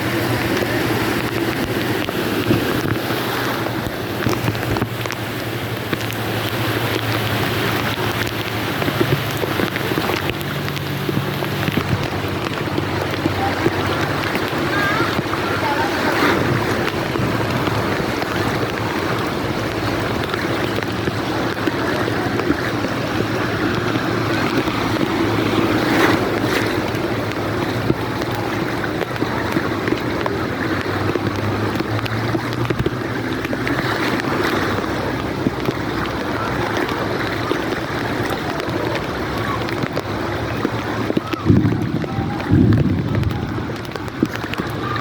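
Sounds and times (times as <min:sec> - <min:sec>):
heavy rain: 0:00.0 - 0:45.0
rushing water: 0:00.0 - 0:45.0
vehicle engine running: 0:38.5 - 0:45.0.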